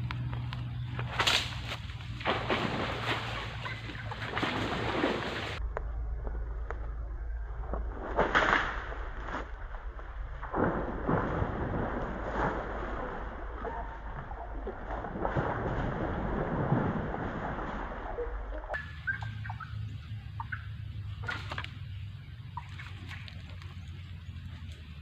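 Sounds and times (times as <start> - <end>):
rustling in vegetation: 0.0 - 5.6, 18.8 - 25.0
low steady rumble: 0.0 - 25.0
fish splashing in water: 1.0 - 5.6, 10.5 - 25.0.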